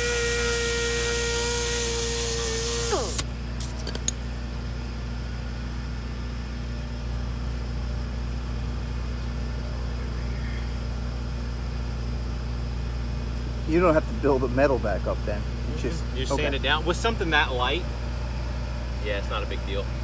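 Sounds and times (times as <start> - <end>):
power sander winding down: 0.0 - 3.2
steady low hum: 0.0 - 20.0.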